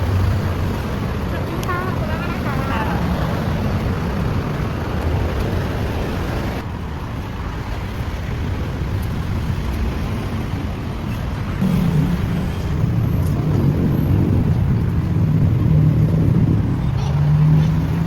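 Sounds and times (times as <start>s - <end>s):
road traffic rumble: 0.0s - 18.0s.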